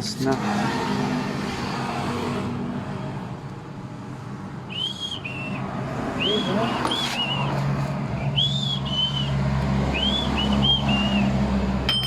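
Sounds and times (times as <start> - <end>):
high whistled phrases: 4.7 - 7.6, 8.2 - 11.3.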